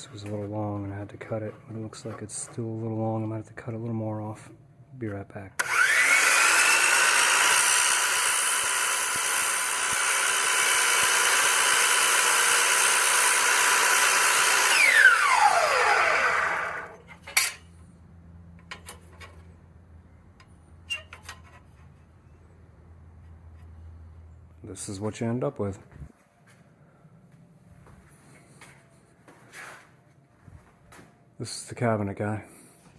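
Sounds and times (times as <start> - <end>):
electric power saw running: 5.6 - 17.1.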